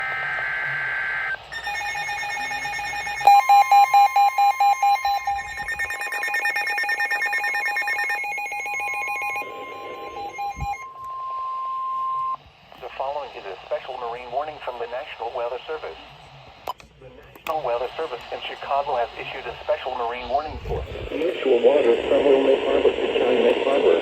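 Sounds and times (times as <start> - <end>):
buzzy digital data screech: 0.0 - 12.4
pulsing alarm beeps: 0.0 - 12.4
steady warning alarm tone: 0.0 - 12.4.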